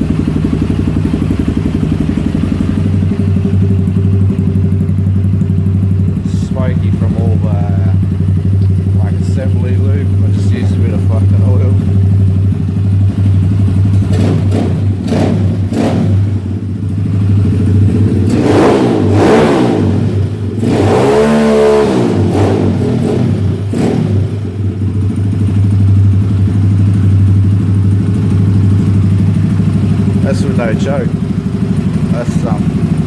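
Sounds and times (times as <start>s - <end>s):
dirt bike engine idling and revving: 0.0s - 33.0s.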